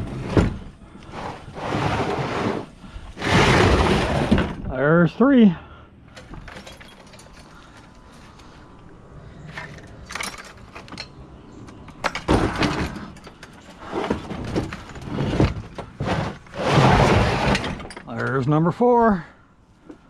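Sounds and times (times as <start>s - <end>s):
metal tools rattling in buckets: 6.2s - 8.3s, 9.5s - 11.2s, 11.8s - 18.4s.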